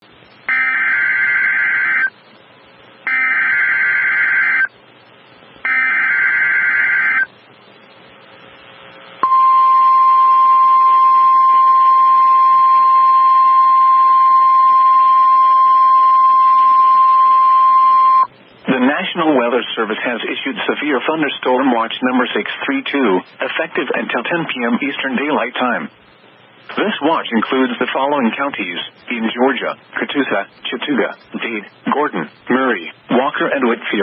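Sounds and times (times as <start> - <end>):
steady warning alarm tone: 0.5 - 2.2, 3.0 - 4.7, 5.6 - 7.4, 9.2 - 18.3.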